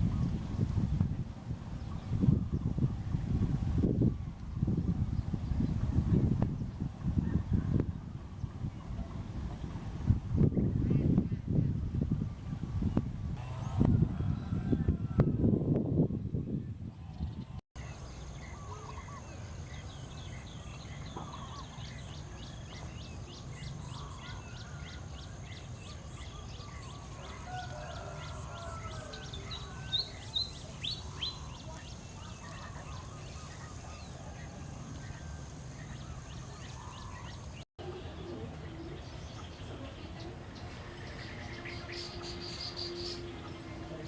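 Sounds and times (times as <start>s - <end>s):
birds chirping: 16.6s - 44.0s.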